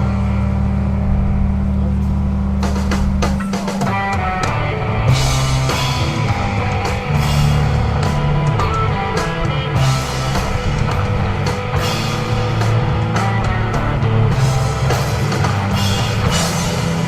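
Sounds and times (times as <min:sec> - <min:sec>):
bass guitar: 0:00.0 - 0:17.0
drum kit with cymbal crashes: 0:00.0 - 0:17.0
electric guitar: 0:00.0 - 0:17.0.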